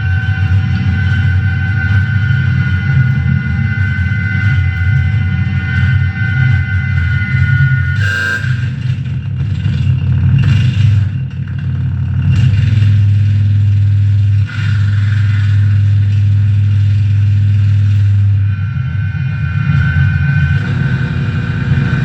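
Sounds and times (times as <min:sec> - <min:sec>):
loud dense low drone: 0:00.0 - 0:22.0
steady feedback tones: 0:13.6 - 0:22.0.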